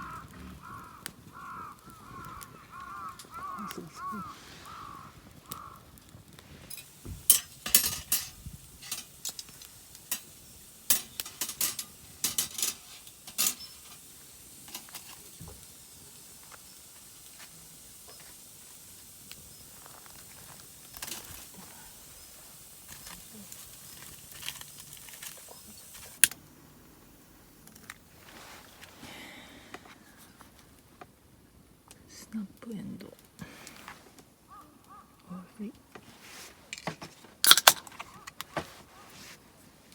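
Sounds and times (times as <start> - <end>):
cookware and utensils clinking: 6.6 - 15.7.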